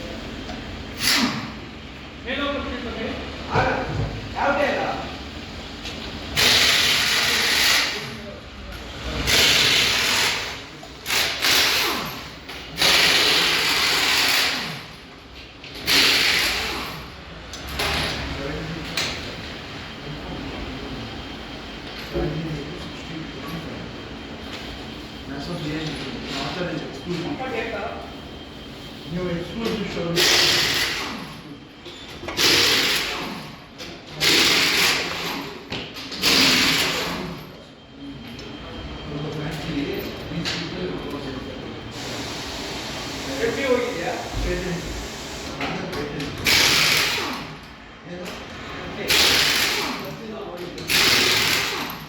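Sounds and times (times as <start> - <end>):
pneumatic tool air bursts: 0.9 - 1.6, 6.3 - 8.1, 9.2 - 15.0, 15.8 - 17.1, 30.2 - 31.4, 32.3 - 33.6, 34.2 - 35.6, 36.2 - 37.3, 41.9 - 45.6, 46.4 - 47.6, 49.1 - 50.2, 50.9 - 52.0
compressed air hissing: 41.9 - 45.6.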